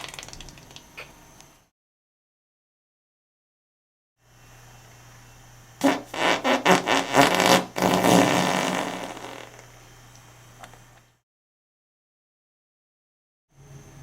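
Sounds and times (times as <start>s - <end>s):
fart: 5.8s - 9.7s.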